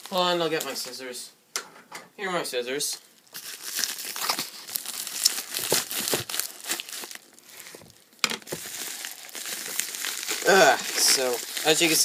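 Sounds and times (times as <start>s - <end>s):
packaging crinkling and rustling: 3.1s - 12.0s.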